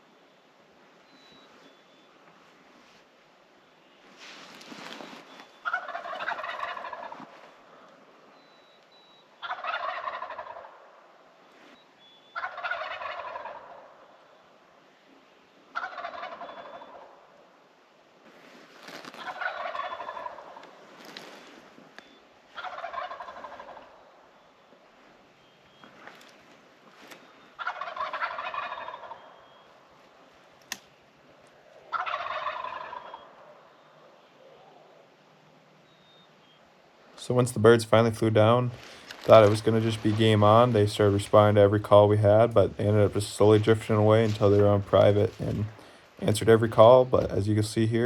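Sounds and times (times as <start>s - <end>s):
turkeys gobbling: 4.7s - 11.1s, 12.3s - 14.2s, 15.7s - 17.4s, 19.0s - 21.4s, 22.0s - 24.3s, 26.9s - 30.9s, 31.5s - 35.1s, 37.2s - 48.0s.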